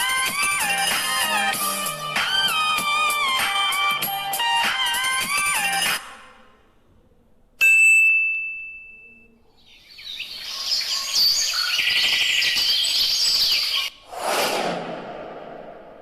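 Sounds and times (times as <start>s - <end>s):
bell ding: 7.6s - 9.3s
birds chirping: 9.6s - 13.9s.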